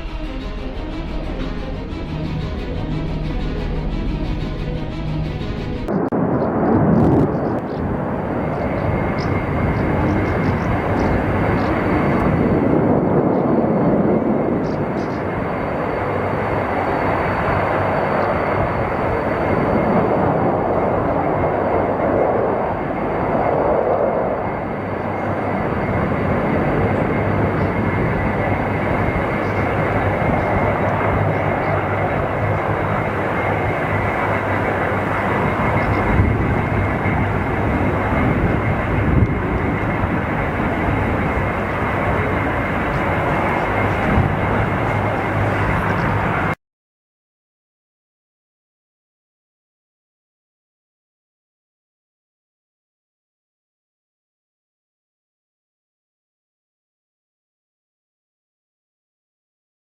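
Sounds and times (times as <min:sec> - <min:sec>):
fighter jet engines rushing: 0:00.0 - 0:46.6
faint high whine: 0:05.9 - 0:46.6.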